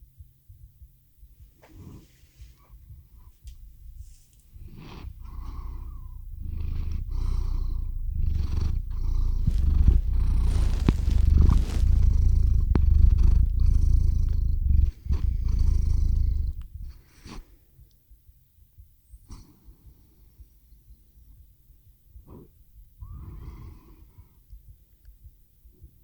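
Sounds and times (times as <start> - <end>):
cat purring: 0.6 - 17.5.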